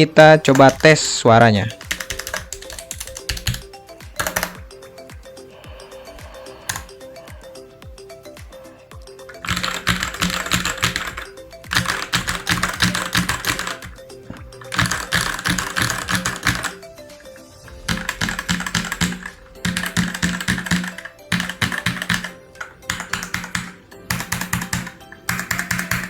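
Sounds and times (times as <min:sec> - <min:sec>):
background music: 0:00.0 - 0:26.0
mechanical keyboard typing: 0:00.2 - 0:04.6, 0:06.7 - 0:07.0, 0:09.2 - 0:16.8, 0:17.7 - 0:26.0.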